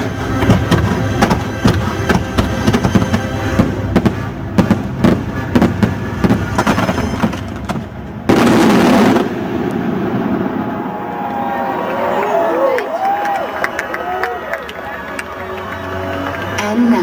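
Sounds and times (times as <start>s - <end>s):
music: 0.0s - 8.4s, 13.5s - 17.0s
fireworks bangs and crackles: 0.0s - 11.3s.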